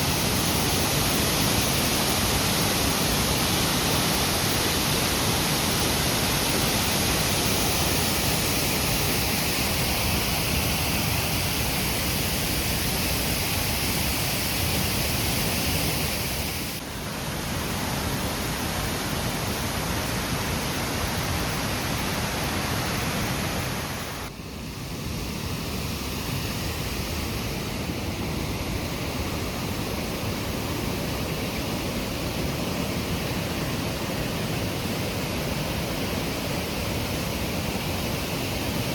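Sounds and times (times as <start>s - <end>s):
waterfall rushing: 0.0s - 24.3s.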